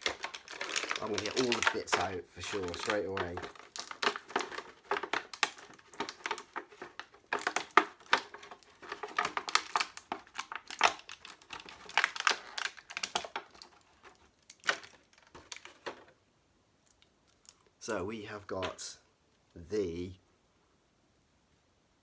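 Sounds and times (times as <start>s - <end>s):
plastic packaging crinkling: 0.0s - 16.2s.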